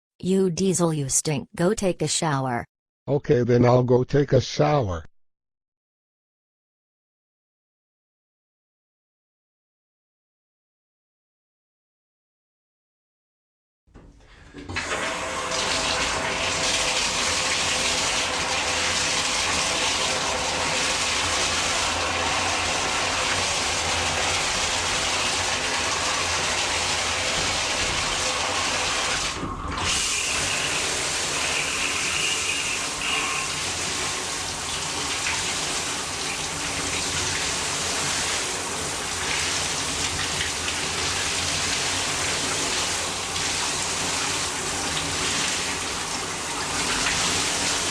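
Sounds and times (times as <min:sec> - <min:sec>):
shower water spraying: 0:14.8 - 0:47.9.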